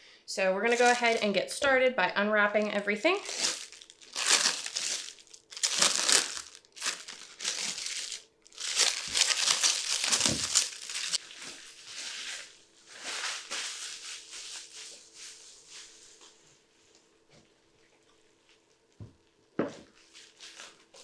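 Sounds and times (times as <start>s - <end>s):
packaging crinkling and tearing: 0.7s - 1.3s, 3.1s - 11.2s.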